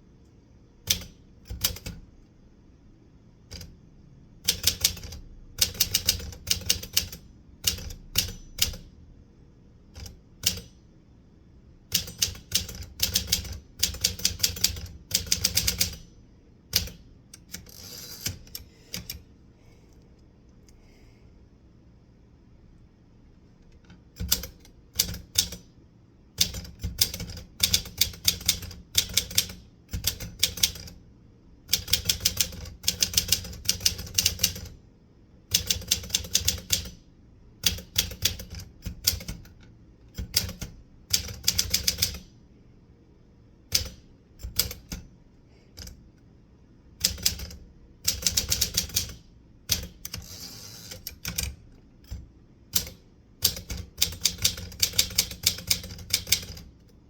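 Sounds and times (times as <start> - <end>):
typewriter keys striking: 47.0 - 50.2, 52.8 - 56.7.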